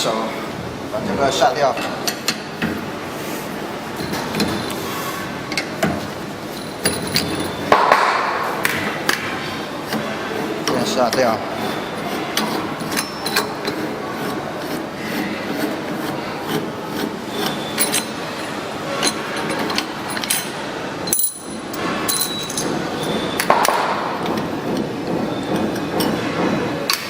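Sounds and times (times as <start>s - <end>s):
tool scraping metal parts: 1.8s - 7.8s, 9.9s - 27.0s
metal clicks and clinks: 6.5s - 7.6s, 17.8s - 18.2s, 19.0s - 22.8s.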